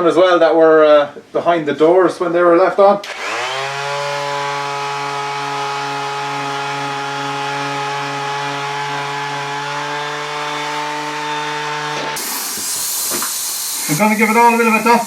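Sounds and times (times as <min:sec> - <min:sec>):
electric sander running: 0:03.0 - 0:12.2.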